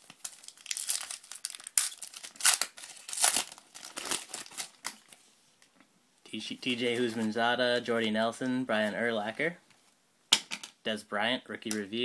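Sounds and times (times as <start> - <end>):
cards and packaging rustling: 0.0 - 5.2.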